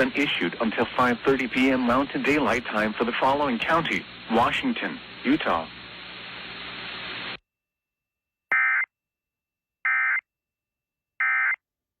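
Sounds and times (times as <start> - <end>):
radio static hiss: 0.0 - 7.4.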